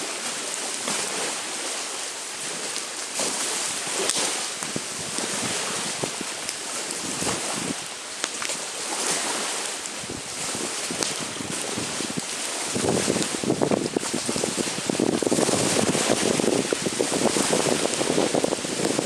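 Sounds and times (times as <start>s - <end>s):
lake waves: 0.0s - 19.0s
campfire crackling and popping: 3.8s - 9.1s, 9.8s - 19.0s
wind rushing: 11.4s - 19.0s.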